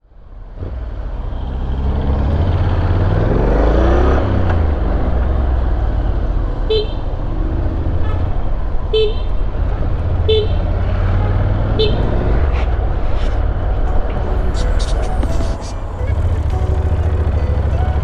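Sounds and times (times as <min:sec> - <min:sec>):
motorcycle engine: 0:00.6 - 0:18.0
vehicle horn toots: 0:06.7 - 0:07.2, 0:08.0 - 0:12.4.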